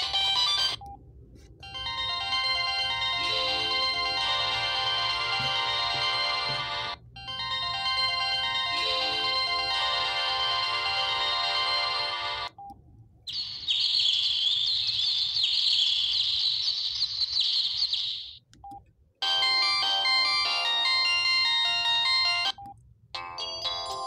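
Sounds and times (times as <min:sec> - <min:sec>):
phone ringtone melody: 0:00.0 - 0:00.9, 0:01.6 - 0:12.6, 0:19.2 - 0:24.0.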